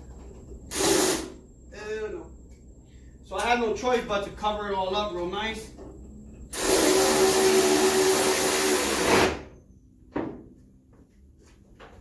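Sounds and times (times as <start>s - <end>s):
power tool whirring: 6.5s - 9.4s.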